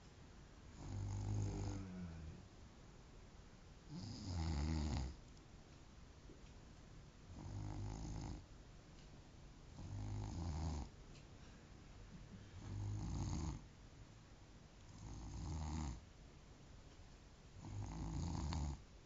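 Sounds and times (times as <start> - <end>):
quiet breathing: 0.7 - 2.6, 9.7 - 13.7
man snoring: 0.8 - 2.4, 3.9 - 5.2, 7.4 - 8.4, 9.8 - 10.9, 12.6 - 13.6, 15.0 - 16.0, 17.6 - 18.8.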